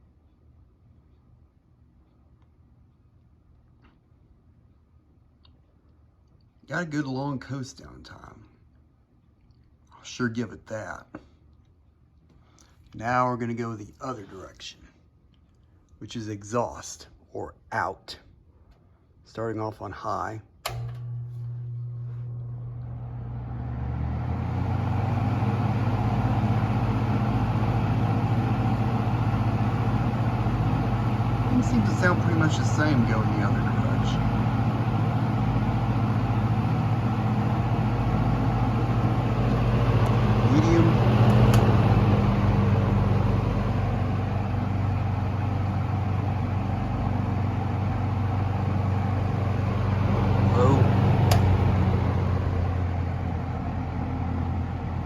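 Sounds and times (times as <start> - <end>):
fan motor hum: 15.6 - 55.0
rush of air from fan blades: 23.3 - 54.2.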